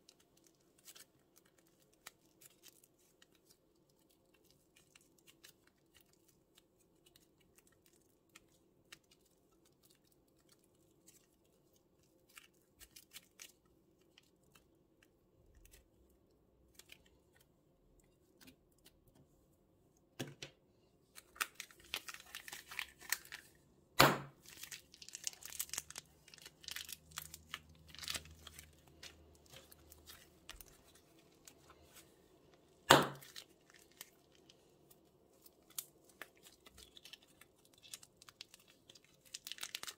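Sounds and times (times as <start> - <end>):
plastic bags crinkling: 21.2 - 23.6, 24.3 - 39.9.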